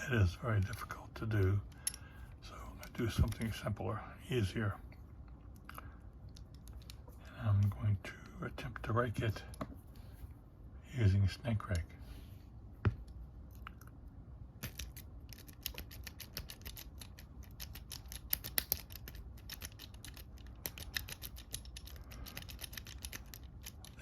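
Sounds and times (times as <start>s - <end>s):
lock pick scraping and clicking: 14.6s - 24.0s.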